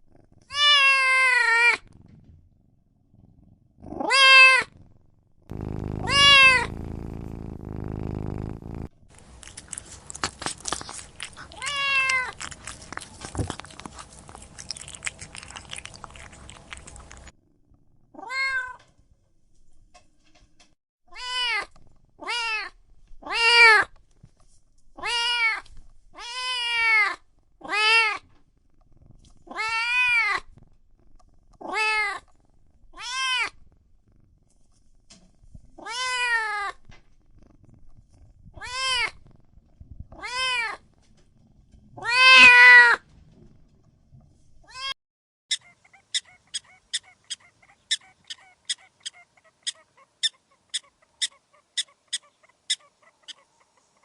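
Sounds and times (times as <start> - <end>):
cat meowing: 0.5 - 1.8, 3.9 - 4.7, 5.5 - 8.9, 10.6 - 17.2, 18.2 - 18.8, 21.1 - 23.9, 25.0 - 25.6, 26.2 - 28.2, 29.5 - 30.4, 31.6 - 32.2, 33.0 - 33.6, 35.8 - 36.8, 38.6 - 39.2, 40.2 - 40.8, 42.0 - 43.0, 44.7 - 45.0.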